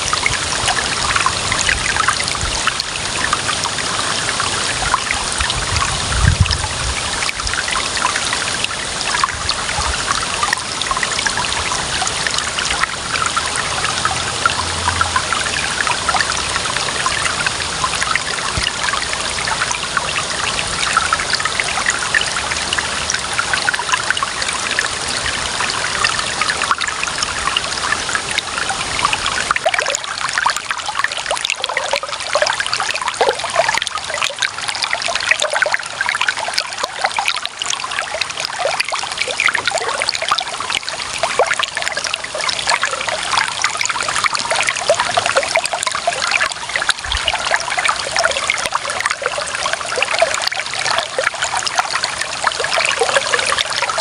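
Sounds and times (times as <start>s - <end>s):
water running and trickling: 0.0s - 54.0s.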